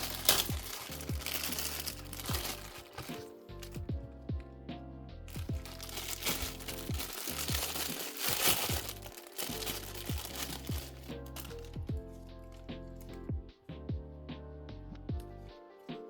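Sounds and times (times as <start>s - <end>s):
crinkling and rustling: 0.0s - 4.0s, 5.3s - 13.3s
lo-fi music with steady beat: 0.0s - 16.0s.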